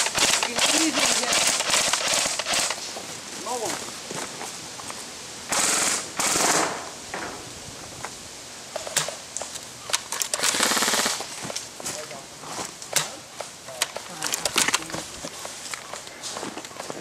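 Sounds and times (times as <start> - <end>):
airsoft gun buzzing rattle: 0.0 - 2.8, 5.5 - 6.8, 9.9 - 11.3.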